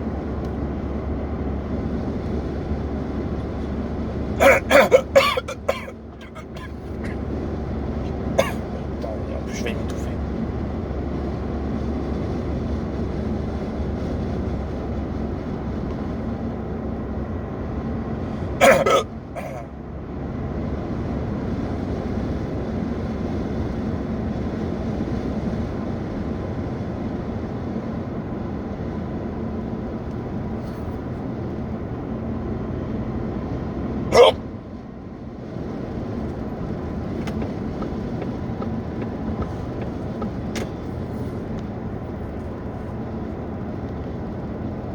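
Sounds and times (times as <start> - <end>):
car road and engine noise: 0.0 - 44.9
sharp hiccups: 4.4 - 7.2, 8.4 - 10.2, 18.6 - 19.7, 34.1 - 34.4, 37.1 - 40.8.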